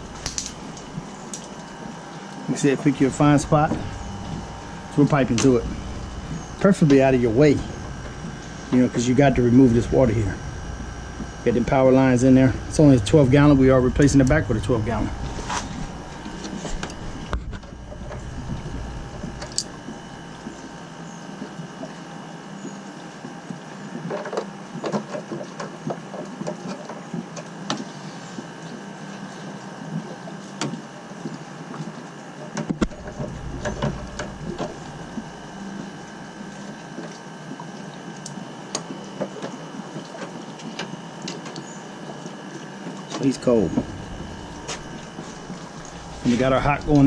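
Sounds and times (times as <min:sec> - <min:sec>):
tubing cutter cutting pipe: 0:00.0 - 0:20.2
faint steady hum: 0:00.0 - 0:25.0, 0:27.4 - 0:47.0.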